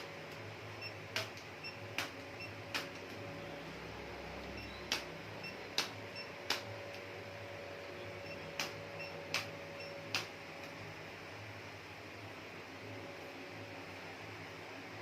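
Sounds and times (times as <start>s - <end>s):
steady background hum: 0.0s - 15.0s
sharp short clicks: 1.1s - 3.2s, 4.4s - 7.1s, 8.3s - 10.8s.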